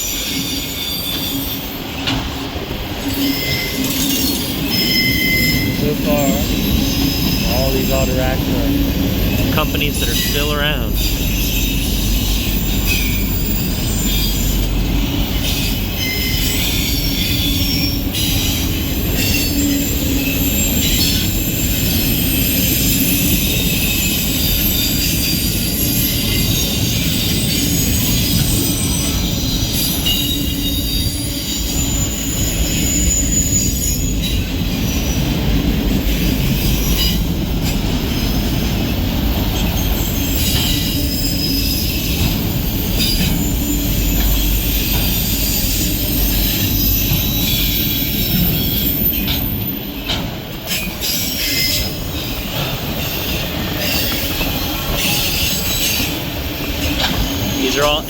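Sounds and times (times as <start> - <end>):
rumble of wheels on rails: 0.0 - 58.0
high-pitched wheel squeal: 3.0 - 8.8, 15.3 - 35.2, 39.6 - 50.0.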